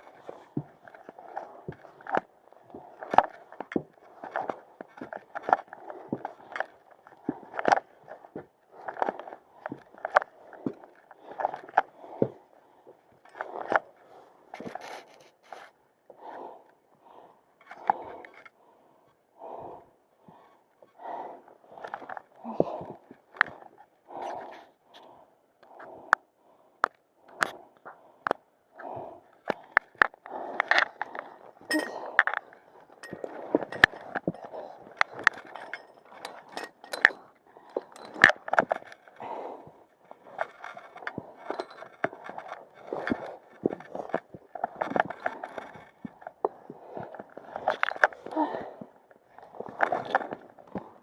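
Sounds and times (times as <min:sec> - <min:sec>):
person breathing hard: 0:16.1 - 0:51.0
metallic clinks of climbing gear: 0:30.6 - 0:48.6.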